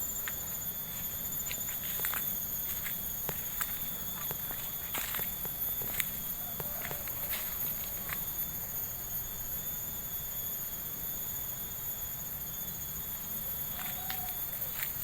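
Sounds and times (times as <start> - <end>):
light footsteps: 0.2 - 8.4, 13.8 - 15.0.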